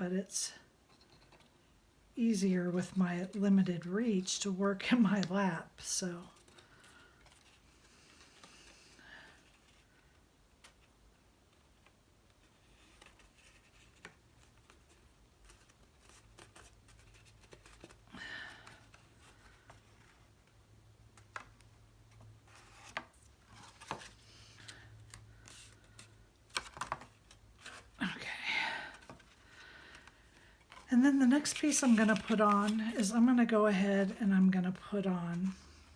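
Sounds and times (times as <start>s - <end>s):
papery rustle: 30.7s - 33.4s.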